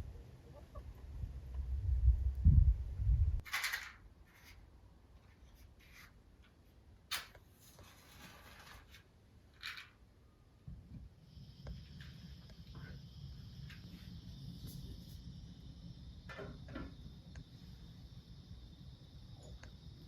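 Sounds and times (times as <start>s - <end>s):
low rumble: 1.0s - 3.4s
small objects scraping and clicking: 7.1s - 10.0s.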